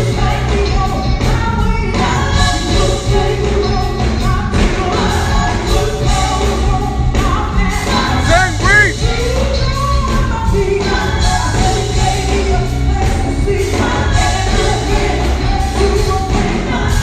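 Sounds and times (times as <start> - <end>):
band accompaniment: 0.0 - 17.0
gospel group singing: 0.0 - 17.0
steady bass: 7.7 - 10.0.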